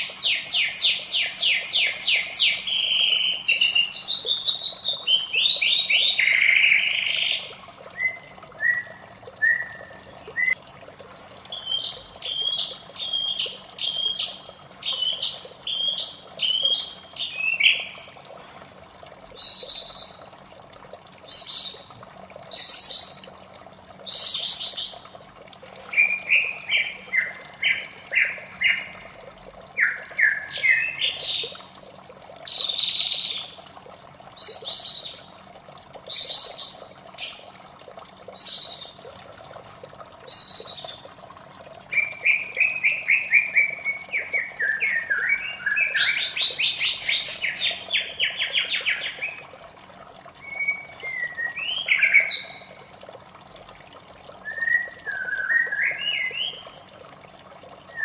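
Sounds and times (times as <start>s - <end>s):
running water rushing: 0.0s - 58.0s
bird singing trills and whistles: 0.1s - 10.6s, 11.5s - 18.0s, 19.4s - 20.3s, 21.2s - 21.9s, 22.5s - 23.2s, 25.9s - 28.9s, 29.8s - 31.6s, 32.5s - 33.6s, 34.4s - 35.2s, 36.1s - 37.4s, 38.4s - 39.0s, 40.2s - 41.1s, 41.9s - 49.4s, 50.4s - 52.8s, 54.4s - 56.9s.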